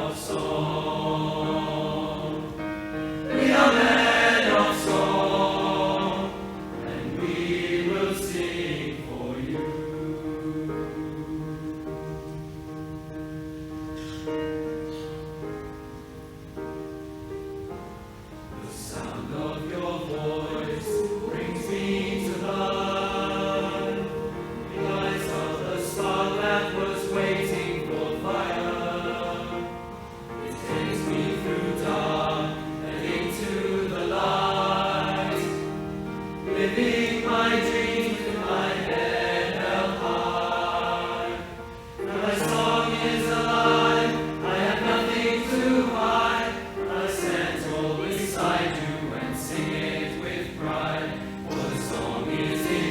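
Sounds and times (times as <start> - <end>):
choir singing: 0.0 - 15.0, 18.5 - 52.9
held accompaniment chords: 0.0 - 52.9.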